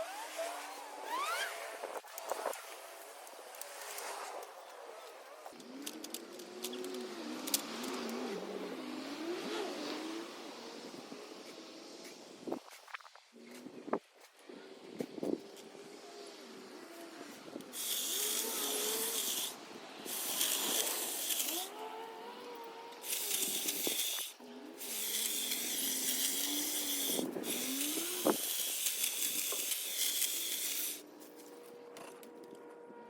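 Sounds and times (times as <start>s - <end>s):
hedge trimmer buzzing: 17.7s - 31.0s.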